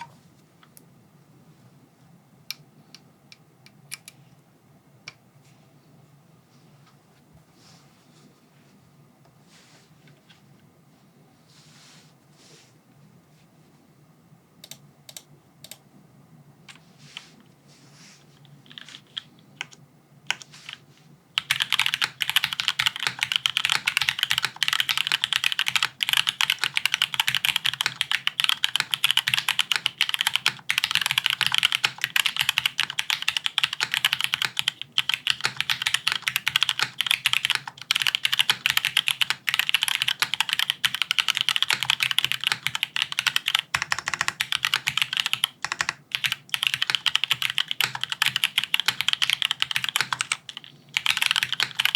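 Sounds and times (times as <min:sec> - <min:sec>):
typing on mechanical keyboard: 0:21.4 - 0:51.9.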